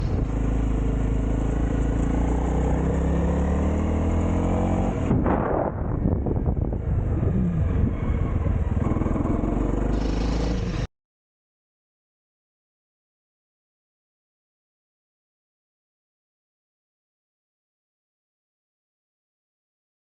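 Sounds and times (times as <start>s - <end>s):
motorcycle engine running: 0.0s - 10.9s.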